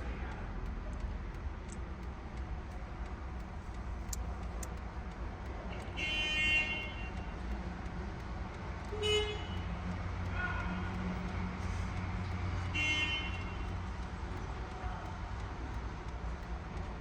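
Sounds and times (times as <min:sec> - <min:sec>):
light clicks: 0:00.3 - 0:06.0.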